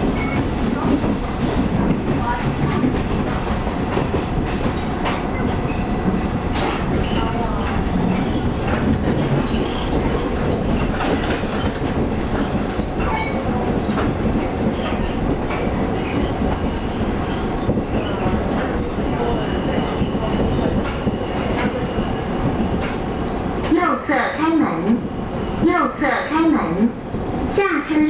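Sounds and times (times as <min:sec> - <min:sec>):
train rumbling on track: 0:00.0 - 0:28.0.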